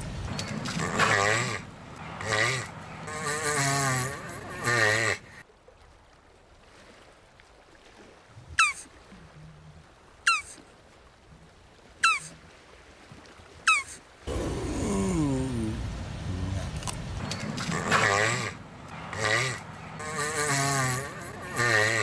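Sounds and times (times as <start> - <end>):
tortoise bleating groan: 0.0 - 5.4, 13.8 - 22.0
short high falling calls: 13.7 - 22.0.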